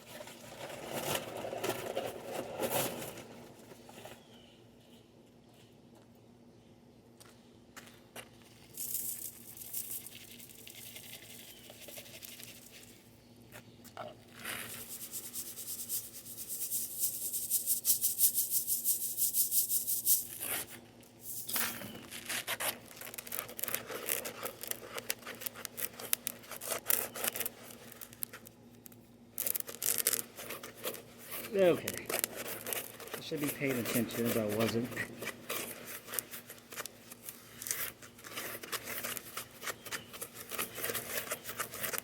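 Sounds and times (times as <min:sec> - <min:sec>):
wet concrete being stirred: 0:29.8 - 0:42.0.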